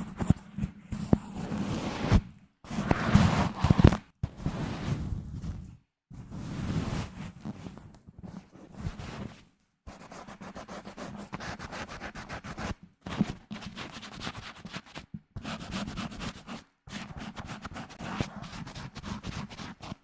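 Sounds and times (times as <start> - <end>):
microphone being scratched: 1.0 - 5.7.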